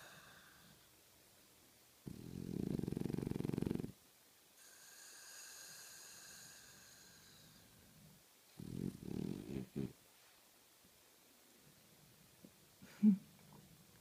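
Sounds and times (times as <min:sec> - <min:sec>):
dog snoring: 0:02.0 - 0:04.0, 0:04.6 - 0:10.0.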